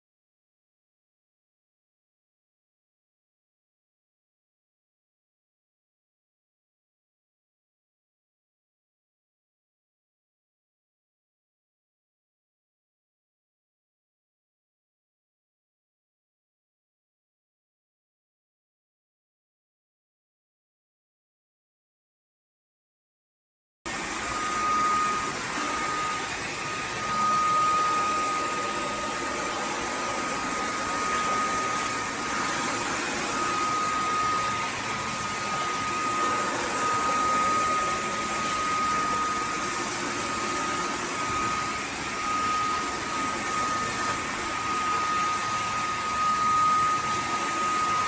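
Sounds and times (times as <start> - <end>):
vacuum cleaner motor whine: 23.9 - 48.0.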